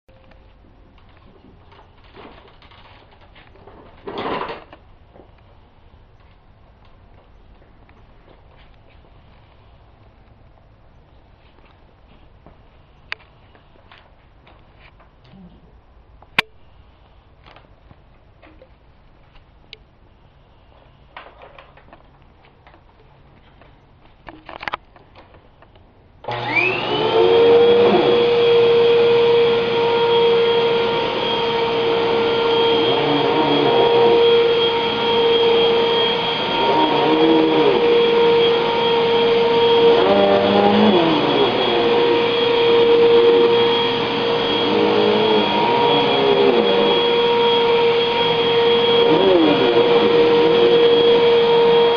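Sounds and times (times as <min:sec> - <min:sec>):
vacuum cleaner motor whine: 0:26.2 - 0:51.9.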